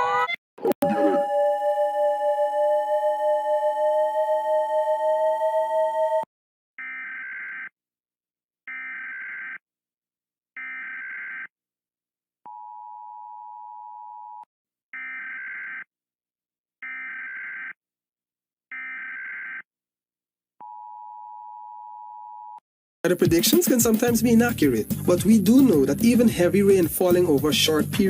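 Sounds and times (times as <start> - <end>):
buzzy alarm beeps: 0.8 - 7.1
steady alarm tone: 0.8 - 7.7.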